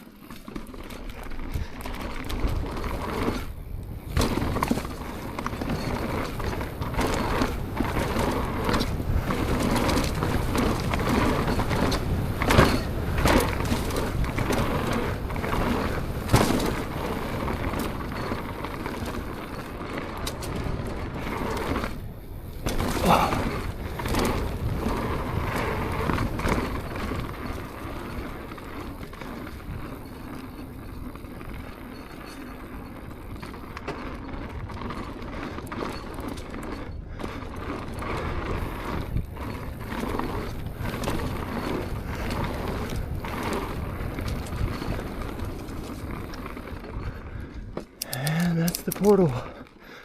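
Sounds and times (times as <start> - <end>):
tyre noise on dirt and rock: 0.0 - 49.9
bike knocking and rattling: 0.0 - 50.0.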